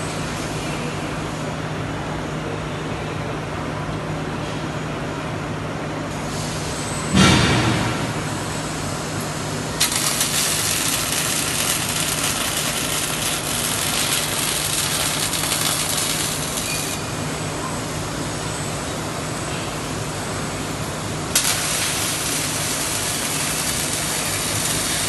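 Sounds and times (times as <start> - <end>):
low machine hum: 0.0 - 25.0
welding arc crackling: 9.7 - 17.2, 21.3 - 25.0
loud burst: 9.8 - 16.6.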